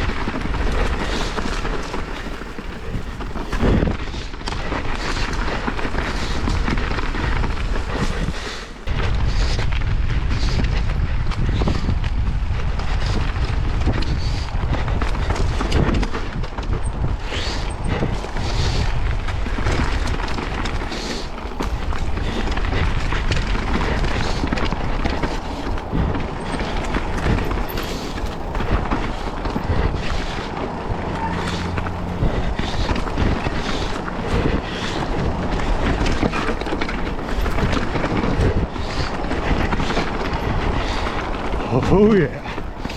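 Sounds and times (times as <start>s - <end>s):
bike knocks and rattles: 0.0s - 7.6s, 8.8s - 41.6s
bike tyres rumbling on dirt: 0.0s - 42.9s
wind on microphone: 0.0s - 42.9s.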